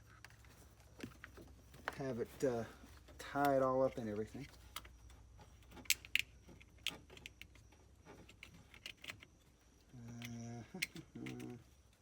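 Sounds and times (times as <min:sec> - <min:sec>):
plastic parts clicking and tapping: 0:03.2 - 0:09.4, 0:10.1 - 0:11.6
man humming: 0:09.9 - 0:11.7.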